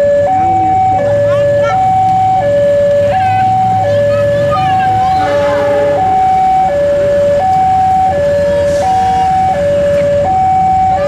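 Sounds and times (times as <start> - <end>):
two-tone warning alarm: 0.0 - 11.0.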